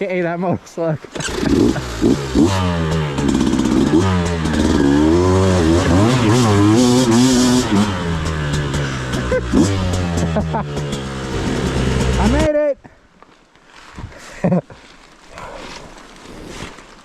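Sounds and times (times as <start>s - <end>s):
dirt bike engine revving: 1.1s - 12.5s.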